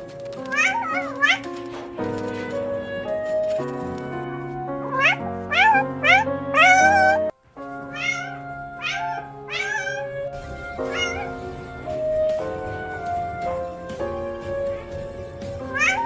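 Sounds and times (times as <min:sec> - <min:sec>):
background music: 0:00.0 - 0:16.0
cat meowing: 0:00.4 - 0:01.5, 0:02.2 - 0:13.2, 0:15.7 - 0:16.0.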